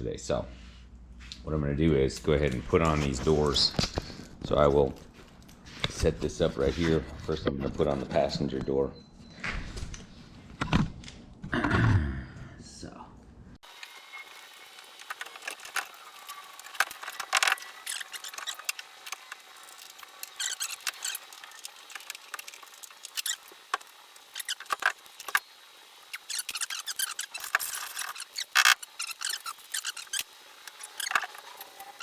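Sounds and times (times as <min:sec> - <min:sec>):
metal clicks and scrapes: 0:14.9 - 0:32.0
hinge squeaks: 0:15.0 - 0:32.0.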